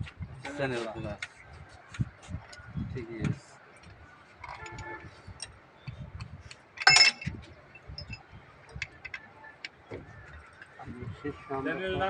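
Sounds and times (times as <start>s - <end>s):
hard objects clinking: 6.8s - 8.2s
metallic ring: 6.8s - 8.2s.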